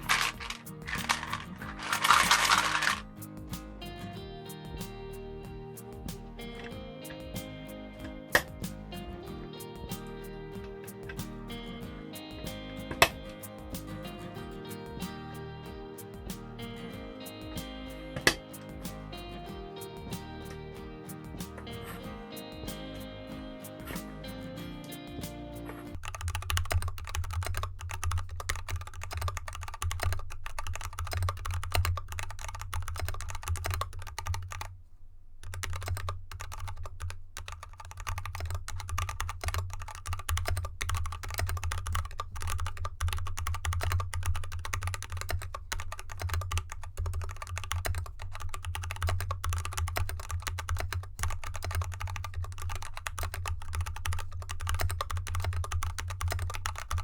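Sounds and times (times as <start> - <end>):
typing on mechanical keyboard: 0.0 - 3.0, 25.9 - 34.7, 35.4 - 57.0.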